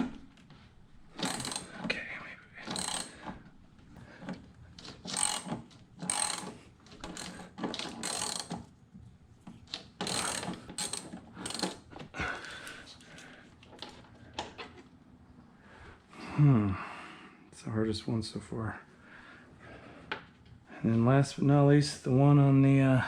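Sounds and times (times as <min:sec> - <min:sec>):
ratchet wrench clicking: 0:01.2 - 0:01.7, 0:02.6 - 0:03.2, 0:05.0 - 0:08.6, 0:10.0 - 0:11.8.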